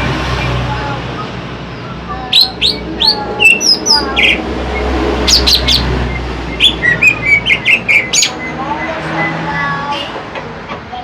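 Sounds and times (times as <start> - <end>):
bird chirping and whistling: 1.2 - 9.8.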